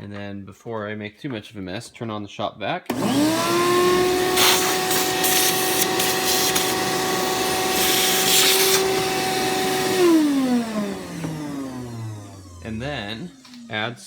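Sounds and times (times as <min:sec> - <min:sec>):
shop vac motor whining: 0:02.9 - 0:14.0.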